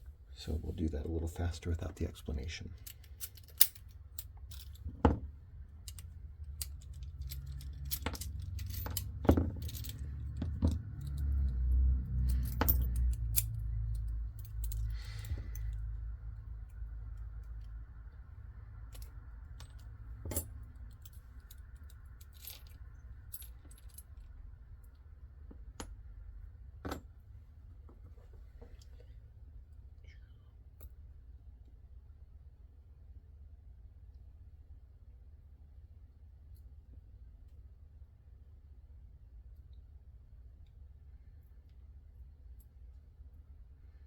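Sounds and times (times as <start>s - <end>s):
small metal lock parts clinking: 2.7s - 15.8s, 18.8s - 26.0s.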